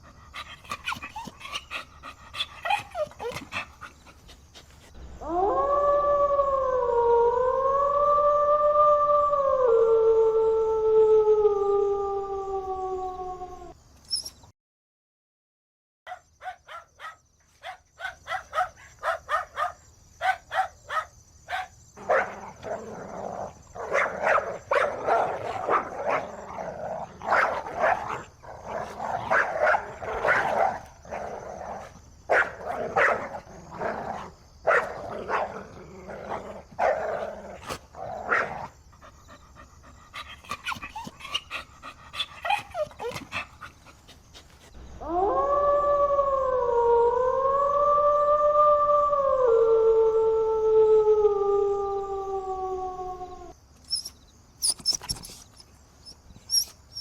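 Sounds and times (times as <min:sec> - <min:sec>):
dog whining: 0:00.4 - 0:03.9, 0:40.2 - 0:43.6, 0:53.8 - 0:57.0
dog barking: 0:16.1 - 0:22.8, 0:23.8 - 0:26.5, 0:27.2 - 0:30.9, 0:32.3 - 0:33.4, 0:34.2 - 0:35.6, 0:38.2 - 0:38.7.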